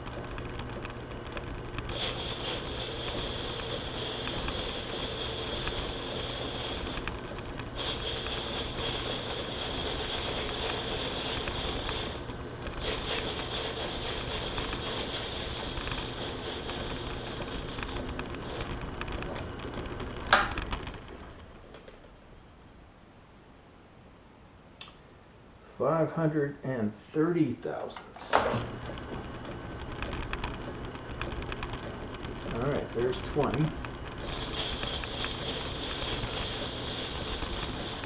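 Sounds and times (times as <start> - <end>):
metal lathe whining: 0.0 - 19.9, 28.4 - 38.0.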